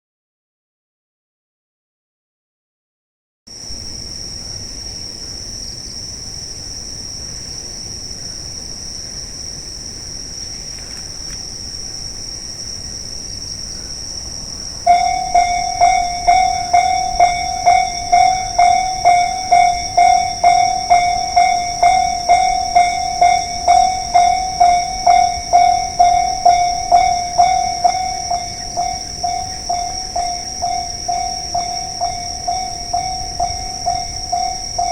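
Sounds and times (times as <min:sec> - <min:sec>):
steady high-pitched tone: 0:14.8 - 0:34.9
level crossing bell dinging: 0:14.9 - 0:34.9.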